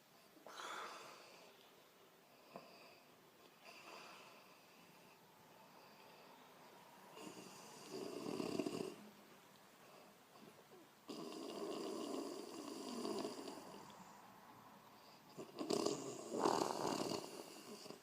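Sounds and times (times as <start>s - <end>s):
woman snoring: 7.1s - 9.0s, 11.1s - 13.9s, 15.3s - 18.0s.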